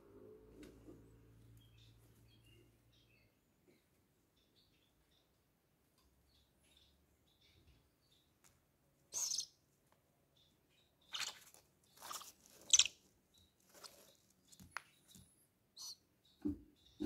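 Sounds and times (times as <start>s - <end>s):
owl chicks hissing begging calls: 9.1s - 9.5s, 11.1s - 13.0s, 15.8s - 16.1s.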